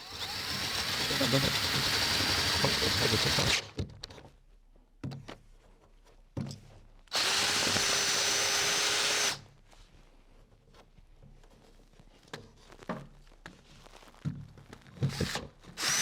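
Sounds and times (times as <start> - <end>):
power drill boring through wood: 0.0 - 3.7, 7.1 - 9.4, 15.1 - 16.0.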